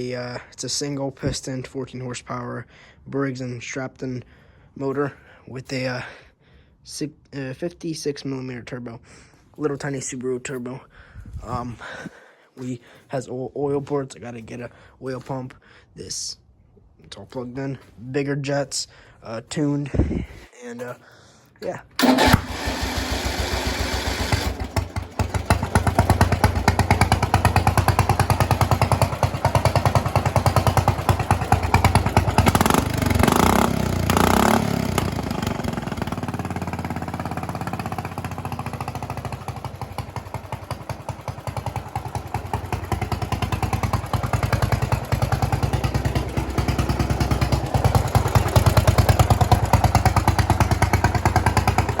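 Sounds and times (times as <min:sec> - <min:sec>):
lawn mower engine revving: 0:22.0 - 0:52.0.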